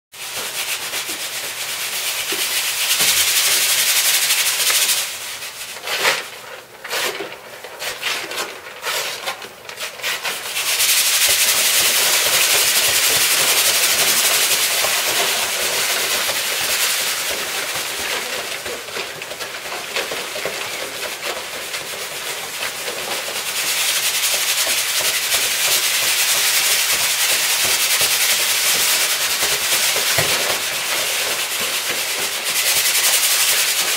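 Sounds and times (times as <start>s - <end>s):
students making hissing rub: 9.8s - 33.9s.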